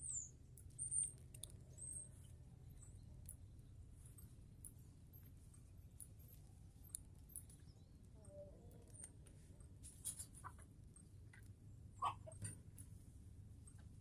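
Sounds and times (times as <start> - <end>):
chickens calling faintly: 12.0 - 12.6.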